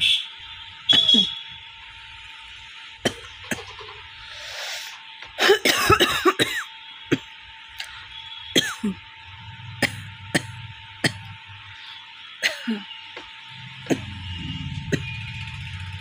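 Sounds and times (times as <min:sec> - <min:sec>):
woman coughing dryly: 0:03.0 - 0:03.8, 0:05.4 - 0:07.3, 0:08.6 - 0:09.0, 0:09.8 - 0:11.3, 0:12.4 - 0:12.9
woman clearing throat: 0:05.4 - 0:06.7, 0:08.6 - 0:09.0, 0:09.8 - 0:11.3, 0:12.4 - 0:12.9.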